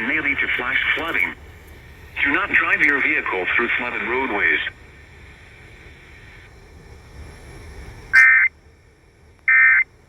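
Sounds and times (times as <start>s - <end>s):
faint hiss: 0.0s - 10.0s
buzzy digital data bursts: 8.1s - 8.5s, 9.5s - 9.8s.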